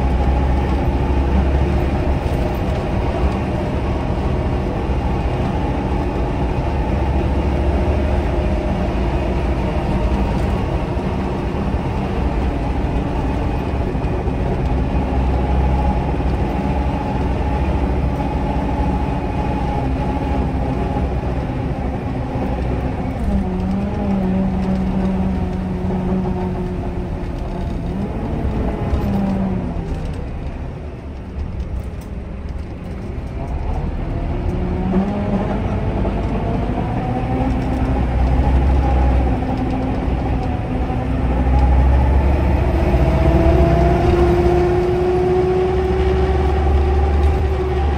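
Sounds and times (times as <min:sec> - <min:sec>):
bus diesel engine droning: 0:00.0 - 0:47.9.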